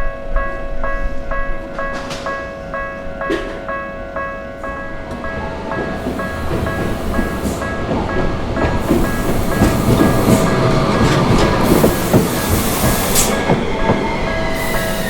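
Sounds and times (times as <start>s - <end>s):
crossing bell two-tone clang: 0.0s - 11.7s
train wheels rumbling and knocking: 1.4s - 15.0s.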